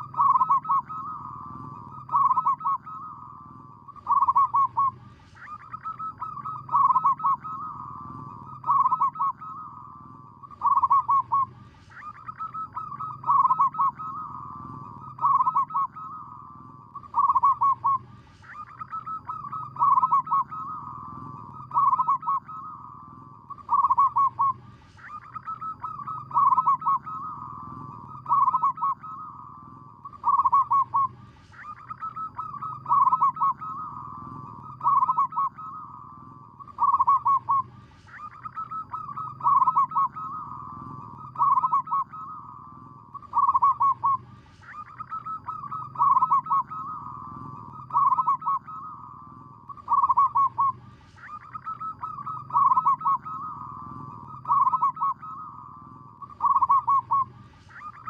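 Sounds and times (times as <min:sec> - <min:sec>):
dove cooing: 0:00.0 - 0:58.0.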